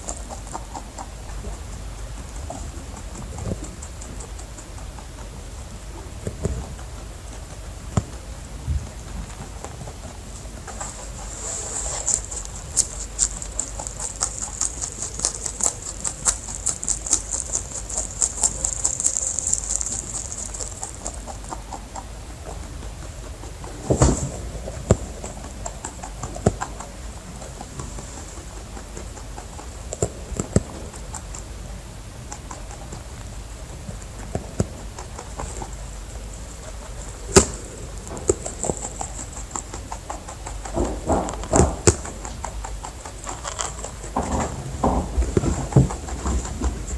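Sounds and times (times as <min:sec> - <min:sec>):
rabbits clicking and rustling: 0:00.0 - 0:46.9
taps and sharp knocks: 0:40.6 - 0:42.5.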